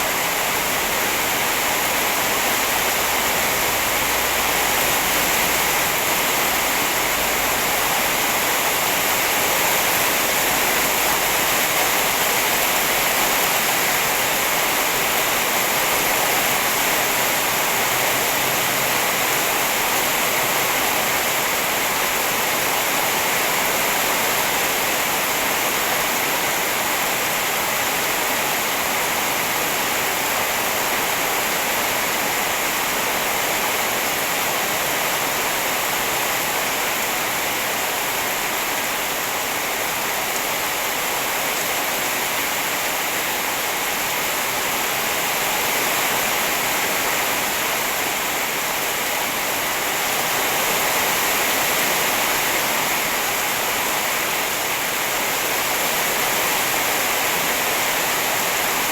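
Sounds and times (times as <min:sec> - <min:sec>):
steady rain falling: 0:00.0 - 0:58.9.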